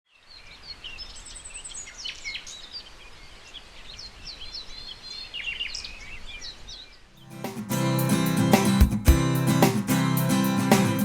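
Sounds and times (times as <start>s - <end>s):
songbirds chirping: 0.1s - 7.9s.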